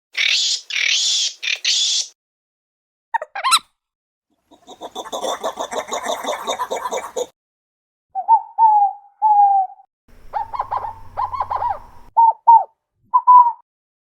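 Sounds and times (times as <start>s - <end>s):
loon calling: 8.2s - 13.6s
faint low hum: 10.1s - 12.1s.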